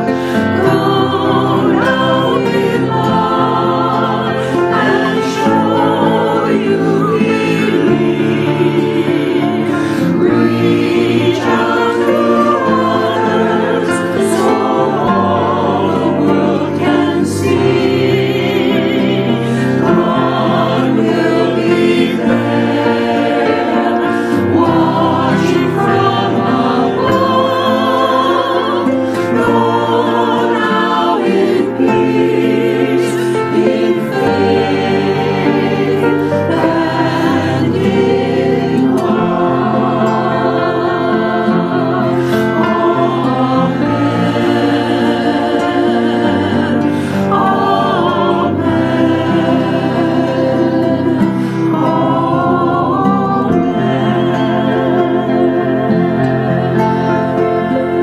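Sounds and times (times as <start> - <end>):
choir singing a hymn: 0.0 - 58.0.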